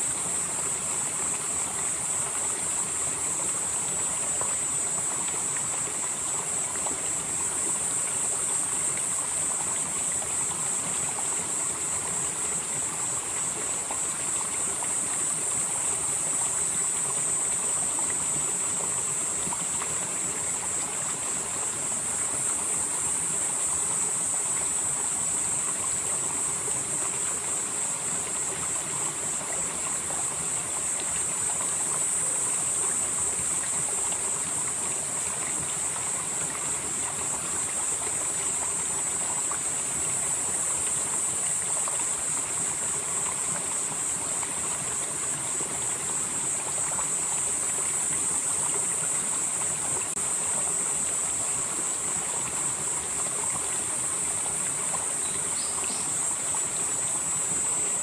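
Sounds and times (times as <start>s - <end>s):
mountain stream flowing: 0.0s - 58.0s
high-pitched hiss: 46.3s - 58.0s.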